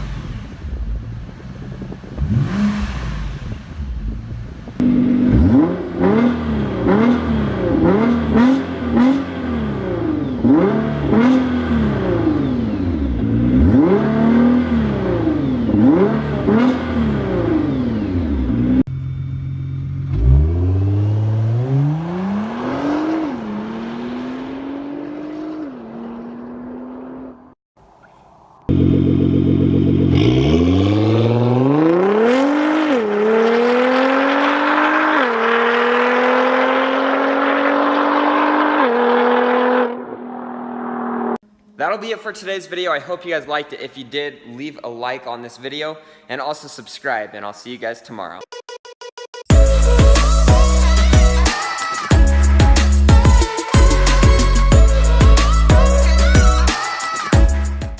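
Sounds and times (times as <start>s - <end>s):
car engine revving: 0.0s - 27.6s, 28.6s - 41.4s
car accelerating through gears: 1.8s - 3.9s, 4.8s - 18.9s, 20.0s - 27.4s, 28.7s - 41.4s
loud steady engine note: 14.4s - 21.6s, 28.7s - 31.2s.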